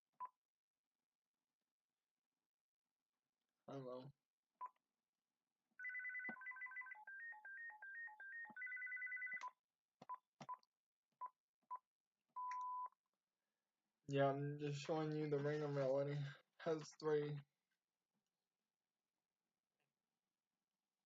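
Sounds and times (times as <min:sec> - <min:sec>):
warbling phone ringtone: 0:05.8 - 0:09.4.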